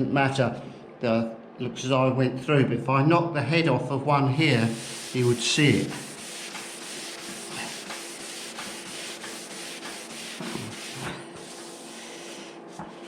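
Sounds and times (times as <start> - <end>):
sanding sponge rubbing paint: 4.4 - 13.0.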